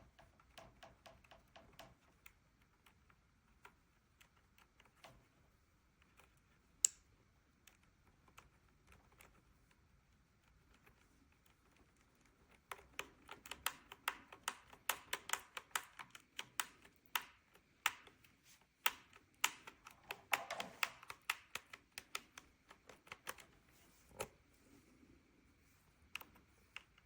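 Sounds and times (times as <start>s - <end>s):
mechanical keyboard key clacks: 12.5s - 18.2s, 18.8s - 23.6s.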